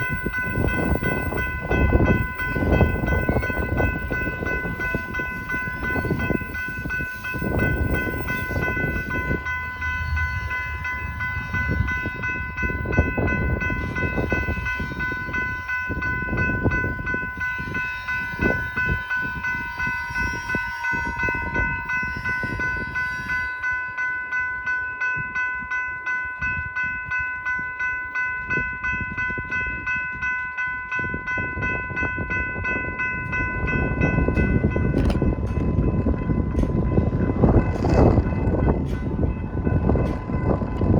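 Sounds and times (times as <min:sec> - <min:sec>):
high ringing tone: 0:00.0 - 0:37.7
train rolling past: 0:00.0 - 0:40.9
wind buffeting microphone: 0:00.0 - 0:40.9
train cars clicking: 0:32.9 - 0:40.9.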